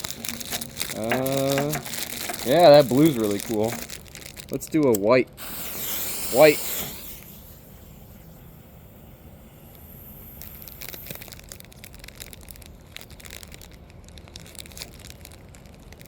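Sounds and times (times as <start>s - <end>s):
smoke ball hissing: 0.0s - 4.6s, 5.4s - 16.0s
smoke ball crackling: 0.0s - 16.0s.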